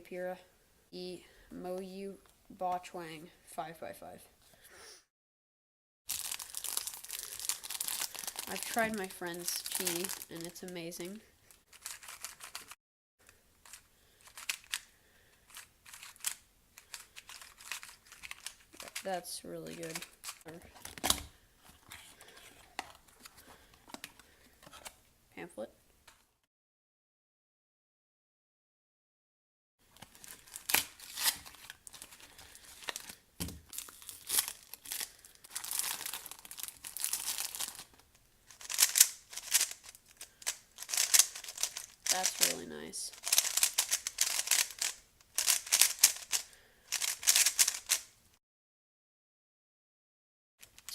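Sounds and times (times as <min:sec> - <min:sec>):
packaging crinkling and tearing: 0:06.1 - 0:12.8, 0:13.6 - 0:14.9, 0:15.5 - 0:25.0, 0:29.9 - 0:48.1, 0:50.6 - 0:50.9.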